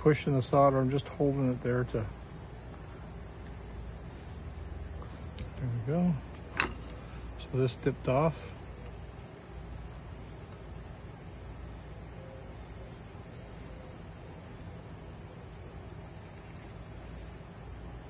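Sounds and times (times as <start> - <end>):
faint low hum: 0.0 - 17.6
insects trilling: 0.0 - 18.0.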